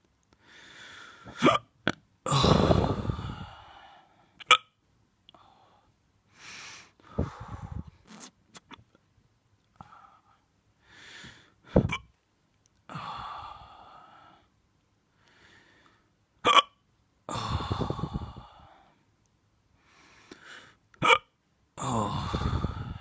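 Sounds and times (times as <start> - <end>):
person hiccuping: 1.3 - 2.0, 4.4 - 4.7, 11.8 - 12.1, 16.4 - 16.8, 21.0 - 21.3
breathy exhale: 2.3 - 4.2, 6.4 - 8.0, 17.3 - 19.0, 21.8 - 23.0.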